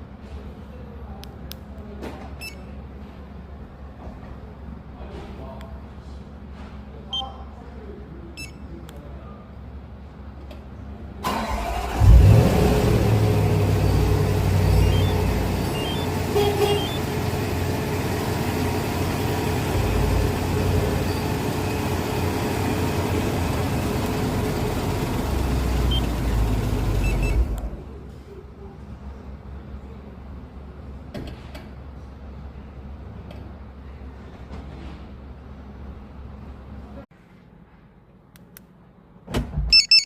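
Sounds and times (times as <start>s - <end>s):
car engine starting and running: 11.2s - 28.0s
engine rev flare: 11.3s - 27.8s.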